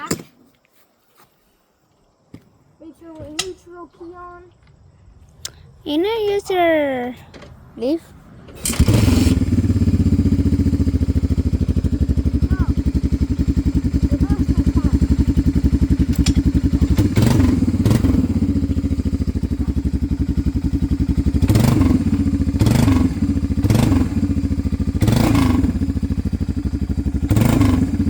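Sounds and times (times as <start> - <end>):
engine idling with throttle blips: 8.5 - 28.0.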